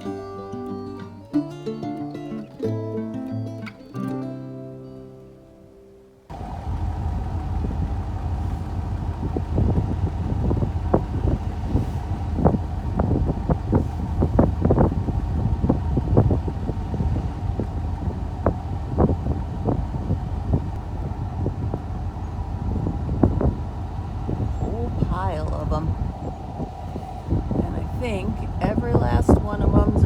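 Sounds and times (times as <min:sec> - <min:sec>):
vehicle engine rumble: 0:06.2 - 0:30.0.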